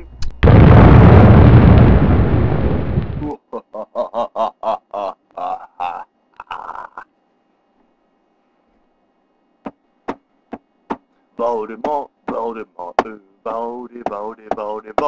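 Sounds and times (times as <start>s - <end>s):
voice making wordless pitched sounds: 4.9s - 7.2s.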